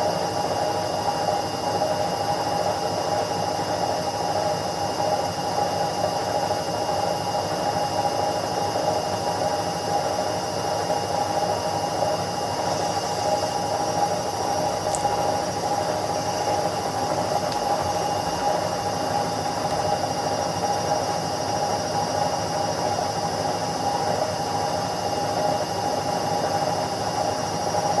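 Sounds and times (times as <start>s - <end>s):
washing machine spinning: 10.8s - 24.4s.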